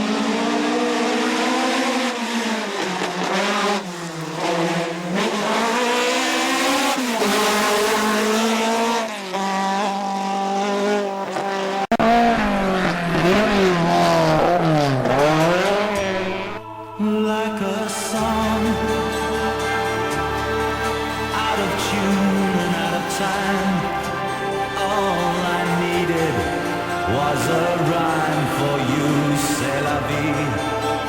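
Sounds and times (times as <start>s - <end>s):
race car engine at high revs: 0.0s - 16.6s, 18.2s - 31.0s
music: 16.1s - 31.0s.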